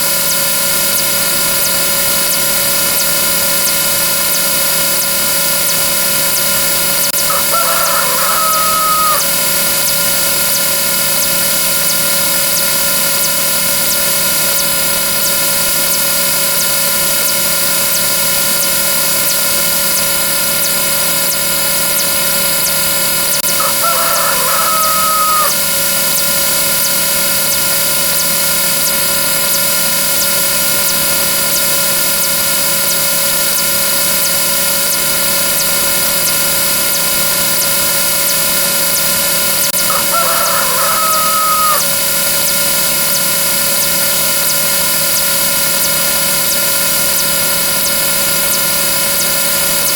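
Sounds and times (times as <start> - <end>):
buzzing drone of sound effects: 0.0 - 49.9
rooster crow sound effect: 7.2 - 10.0, 23.4 - 26.1, 39.6 - 42.6.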